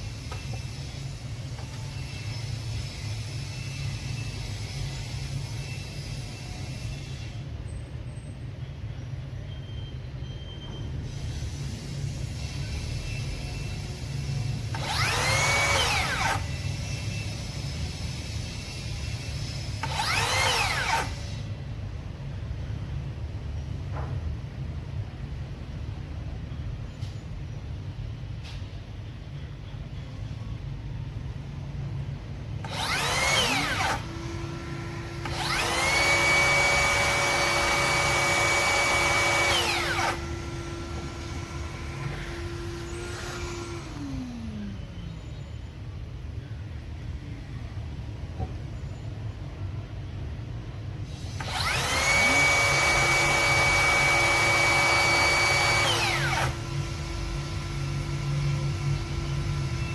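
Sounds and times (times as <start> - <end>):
circular saw spinning: 14.7 - 17.0, 19.8 - 21.4, 32.6 - 44.8, 51.3 - 59.9
steady low hum: 31.3 - 48.0
vacuum cleaner humming: 32.7 - 44.7, 51.5 - 59.2.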